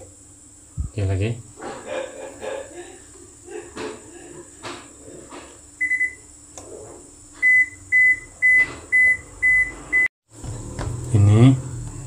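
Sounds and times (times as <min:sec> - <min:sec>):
washing machine beeps: 0:05.8 - 0:06.3, 0:07.4 - 0:10.1.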